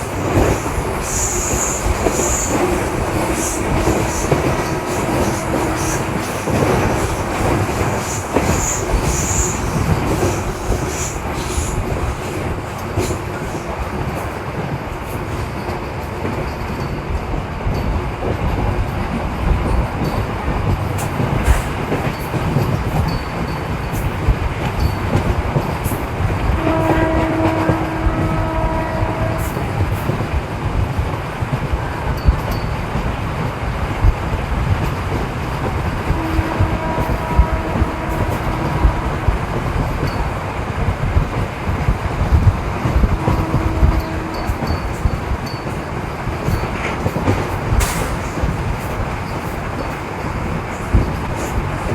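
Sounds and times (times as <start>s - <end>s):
train horn: 0.0s - 11.8s, 26.4s - 30.2s, 36.0s - 40.0s, 42.8s - 45.2s
train wheels rumbling on rails: 0.0s - 51.9s.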